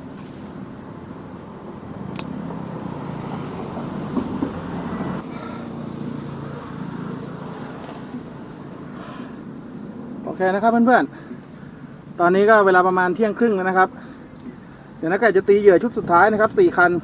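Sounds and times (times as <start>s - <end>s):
passing car engines: 0.0s - 12.2s
road traffic hum: 0.0s - 17.0s
sharp click: 2.1s - 2.4s.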